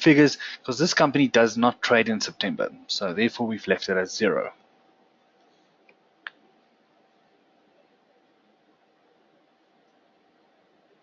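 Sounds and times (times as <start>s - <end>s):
faint steady hum: 0.0s - 11.0s
recording hiss: 0.0s - 11.0s.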